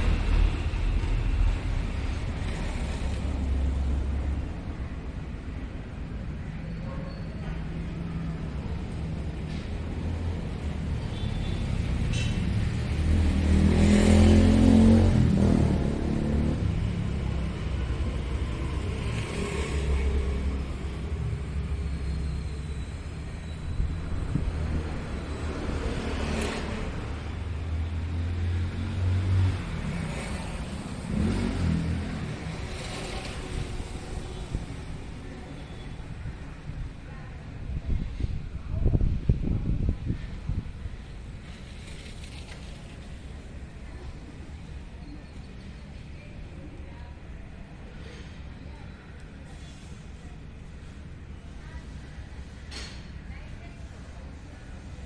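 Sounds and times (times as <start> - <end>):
road traffic rumble: 0.0 - 55.0
wind on microphone: 36.4 - 41.3.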